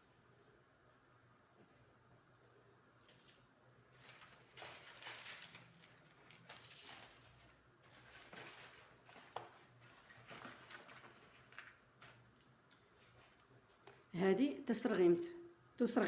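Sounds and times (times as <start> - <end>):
dry herbs rustling: 3.1 - 12.4.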